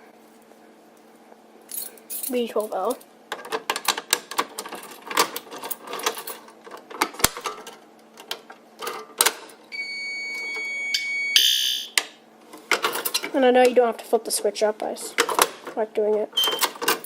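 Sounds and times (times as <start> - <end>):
alarm pull station clicking: 9.7 - 12.0
loud alarm burst: 9.7 - 12.0
steady high electronic tone: 9.7 - 12.0.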